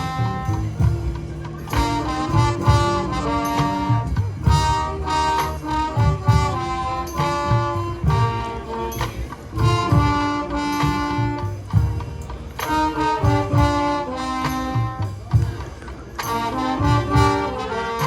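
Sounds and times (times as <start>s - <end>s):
brass ensemble playing chords: 0.0s - 18.0s.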